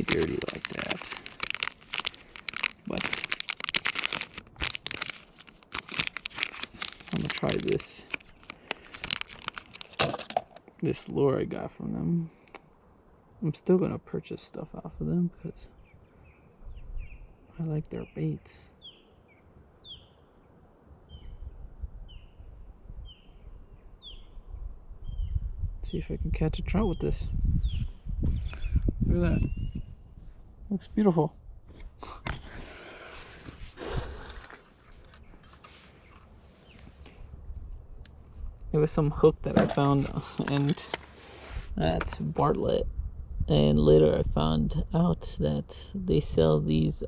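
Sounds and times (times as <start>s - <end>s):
plastic packaging crinkling: 0.0s - 10.6s, 39.5s - 41.2s
bird chirping: 15.6s - 25.5s, 26.9s - 30.1s.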